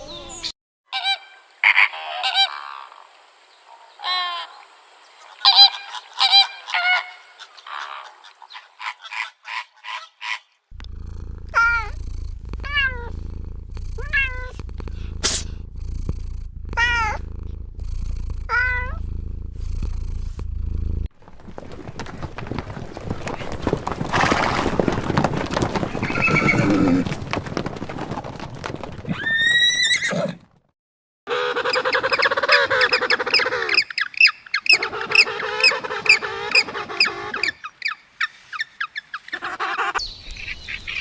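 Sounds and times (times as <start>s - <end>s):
rough noisy animal sound: 5.3s - 30.1s
steady low hum: 10.7s - 21.1s
cat meowing: 11.5s - 12.0s, 12.6s - 13.1s, 14.0s - 15.6s, 16.7s - 17.2s, 18.3s - 19.0s.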